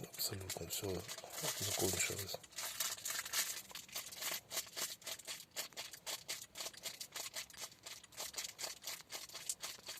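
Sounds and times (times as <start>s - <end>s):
rustling with light clicks: 0.0s - 9.9s.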